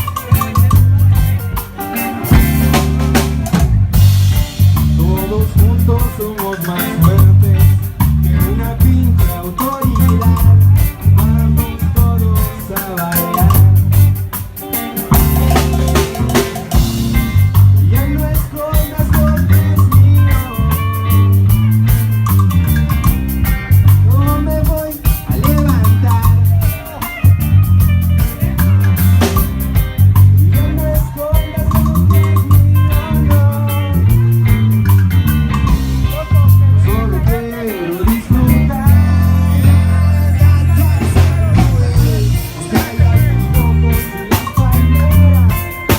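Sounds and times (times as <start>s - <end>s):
steady drum beat: 0.0s - 45.9s
repeating bass line: 2.1s - 14.3s, 15.1s - 45.7s
person singing: 4.9s - 13.8s, 36.0s - 45.9s.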